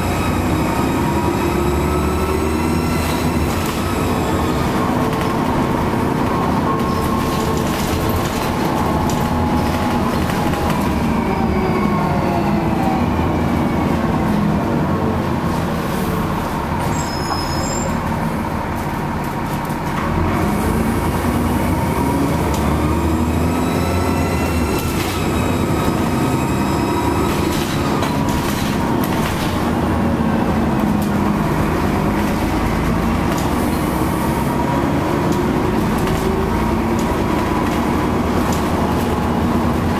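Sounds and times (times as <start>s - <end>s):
bus diesel engine under load: 0.0s - 39.9s
road rumble: 0.0s - 39.9s
bus body rattles and knocks: 2.4s - 11.2s, 23.4s - 39.9s.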